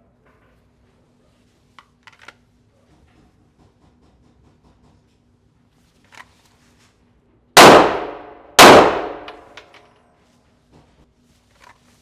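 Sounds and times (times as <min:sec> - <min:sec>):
pistol shots echoing: 0:07.6 - 0:09.6.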